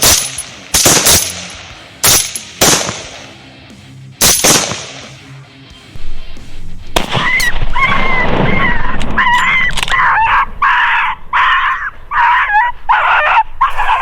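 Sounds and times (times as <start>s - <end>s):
rifle shot: 0.0s - 3.3s, 4.2s - 5.1s, 7.0s - 9.0s
animal crying and yelping: 7.1s - 14.0s.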